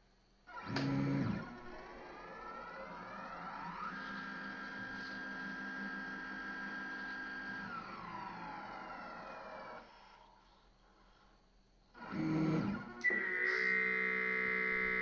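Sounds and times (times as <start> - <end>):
stepper motors whining: 0.5 - 11.2, 11.9 - 15.0.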